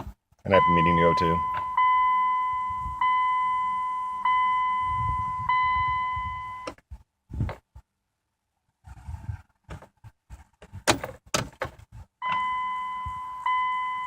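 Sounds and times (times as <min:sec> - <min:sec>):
car warning chime: 0:00.5 - 0:06.8, 0:12.2 - 0:14.0.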